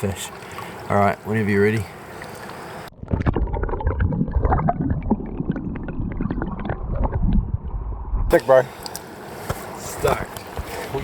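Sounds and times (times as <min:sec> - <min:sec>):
muffled underwater river gurgling: 0:01.9 - 0:08.3.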